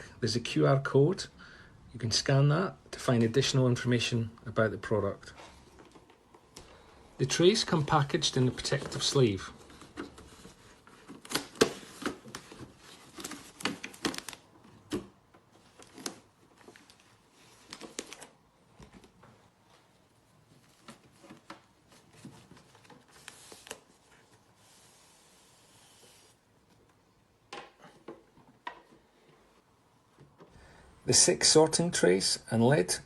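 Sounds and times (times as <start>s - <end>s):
packaging rustling: 8.2s - 26.4s.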